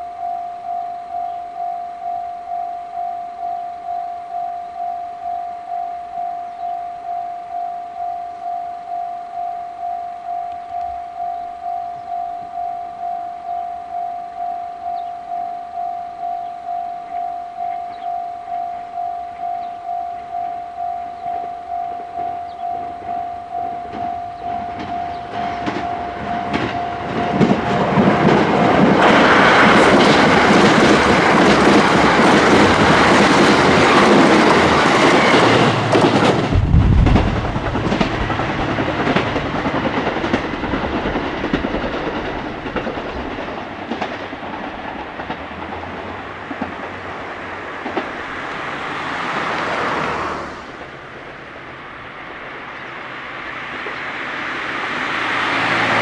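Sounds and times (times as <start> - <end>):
level crossing bell ringing: 0.0 - 28.3
train passing at speed: 0.0 - 56.0
wheels clacking over rail joints: 21.2 - 52.9.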